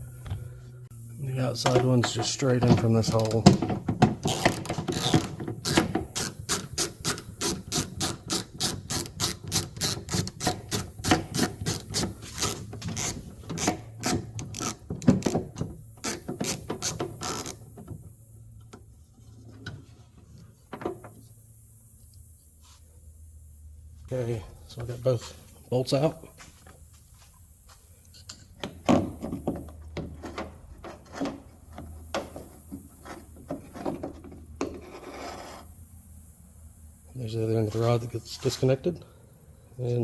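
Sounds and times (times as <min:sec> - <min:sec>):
ratchet wrench clicking: 0:04.2 - 0:15.4.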